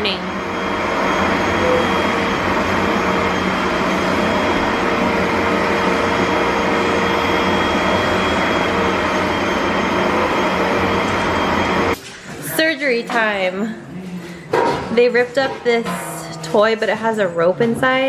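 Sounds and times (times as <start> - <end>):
vacuum cleaner running: 0.0 - 12.0.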